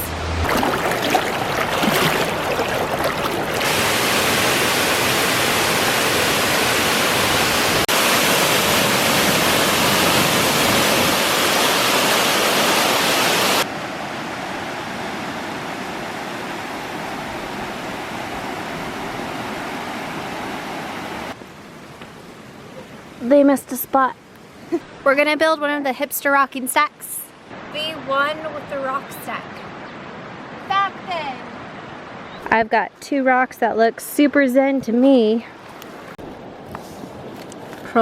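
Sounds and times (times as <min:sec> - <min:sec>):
waterfall rushing: 0:00.0 - 0:23.2.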